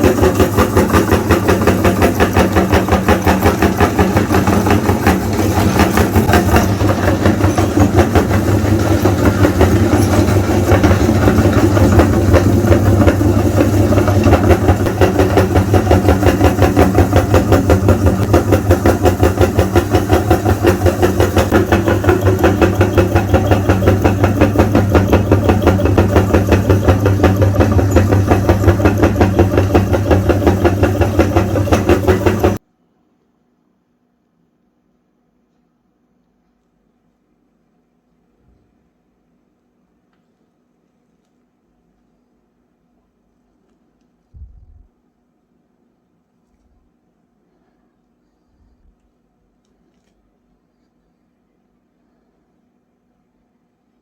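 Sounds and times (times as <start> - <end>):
meat grinder motor humming: 0.0 - 32.6.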